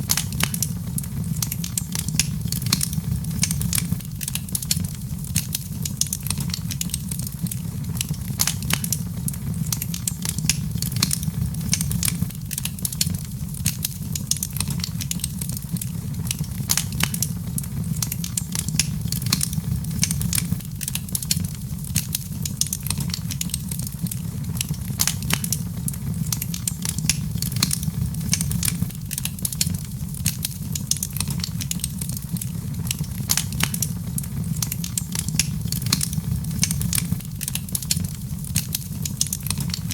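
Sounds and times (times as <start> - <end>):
fire crackling and popping: 0.0 - 39.9
fire rumbling: 0.0 - 39.9.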